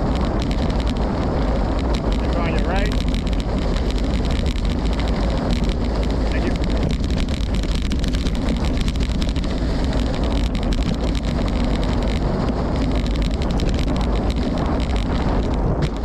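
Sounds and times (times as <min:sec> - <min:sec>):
light rattling ticks: 0:00.0 - 0:16.0
wind buffeting microphone: 0:00.0 - 0:16.0.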